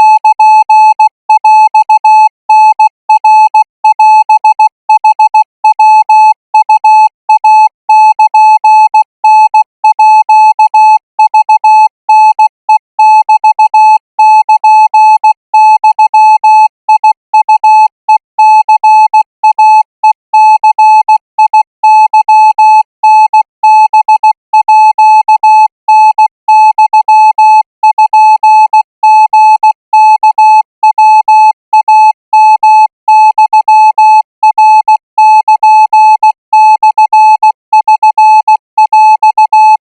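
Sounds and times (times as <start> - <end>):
morse code beeps: 0.0 - 39.8.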